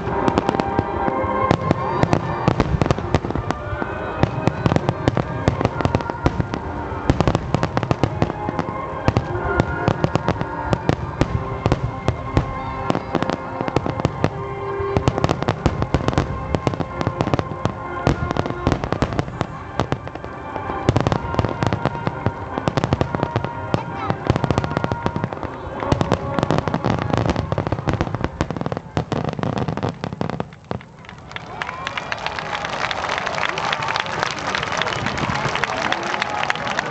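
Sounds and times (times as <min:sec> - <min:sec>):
music over loudspeakers: 0:00.0 - 0:30.4
fireworks bangs and crackles: 0:00.0 - 0:31.2, 0:32.6 - 0:36.9.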